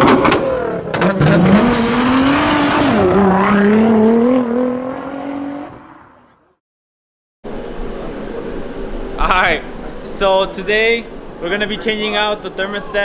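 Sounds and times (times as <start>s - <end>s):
car engine at high revs: 0.0s - 6.2s.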